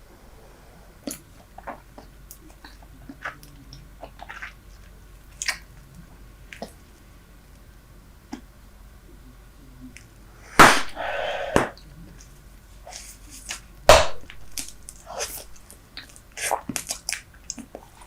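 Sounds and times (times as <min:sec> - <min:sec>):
gum chewing smacks: 0:01.0 - 0:06.8, 0:14.4 - 0:18.0.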